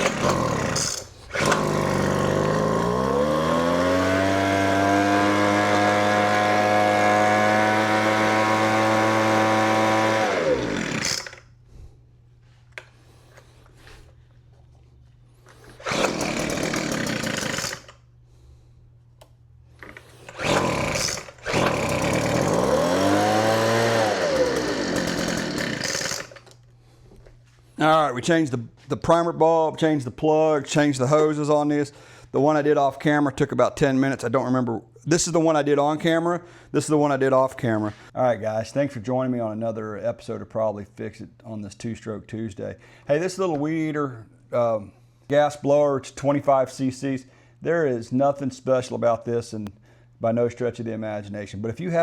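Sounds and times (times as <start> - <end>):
blower engine running: 0.0 - 11.4, 15.6 - 17.9, 19.8 - 26.4.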